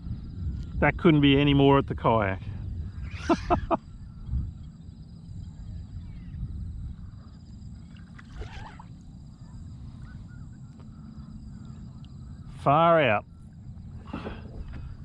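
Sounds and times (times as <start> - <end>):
water and hull rumble: 0.0 - 15.0
short splash: 7.9 - 8.9.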